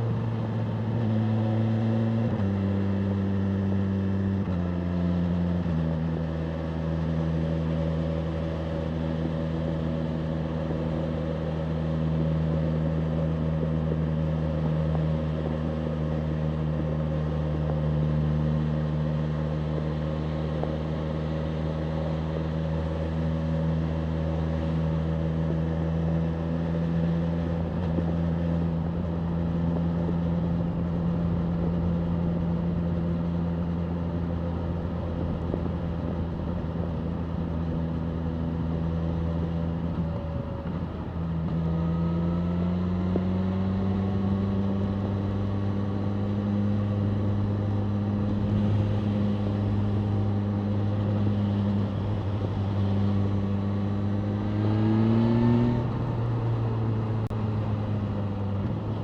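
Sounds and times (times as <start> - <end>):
motorcycle engine cruising: 0.0 - 59.0.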